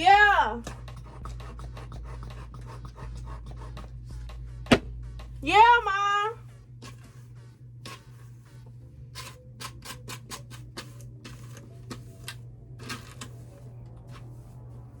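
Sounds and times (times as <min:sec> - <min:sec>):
steady low hum: 0:00.0 - 0:15.0
wig being brushed: 0:06.6 - 0:09.4, 0:12.8 - 0:15.0.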